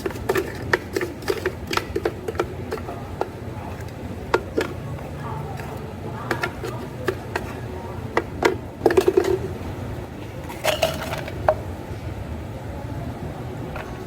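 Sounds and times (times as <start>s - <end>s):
steady low hum: 0.0s - 14.0s
glassware clinking: 10.5s - 11.6s.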